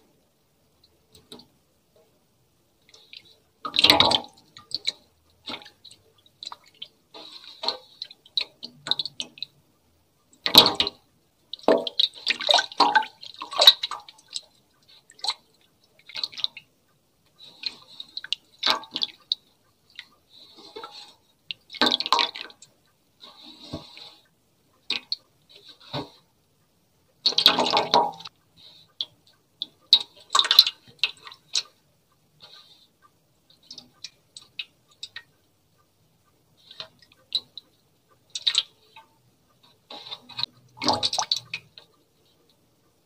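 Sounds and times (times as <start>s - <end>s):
wet squishing and dripping: 2.8s - 9.7s, 10.4s - 26.3s, 29.0s - 31.8s, 36.6s - 42.6s.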